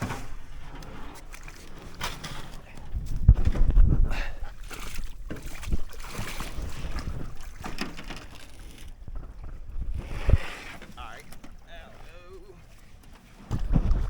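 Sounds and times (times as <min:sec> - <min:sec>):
water sloshing around canoe hull: 0:00.0 - 0:14.0
wind buffeting microphone: 0:02.9 - 0:07.7, 0:08.9 - 0:10.6, 0:13.5 - 0:14.0
dull knocks on canoe: 0:13.4 - 0:14.0.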